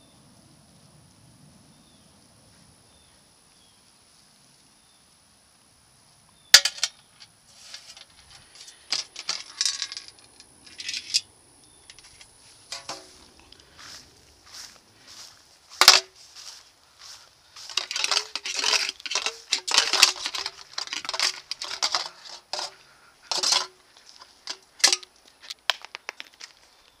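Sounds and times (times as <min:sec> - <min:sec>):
footsteps crunching dry leaves: 0:12.0 - 0:26.9.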